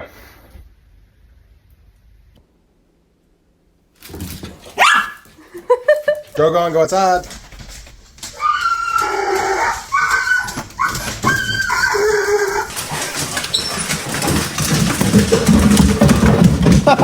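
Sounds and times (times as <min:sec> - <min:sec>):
dog whining: 0:04.7 - 0:05.3, 0:08.2 - 0:15.1.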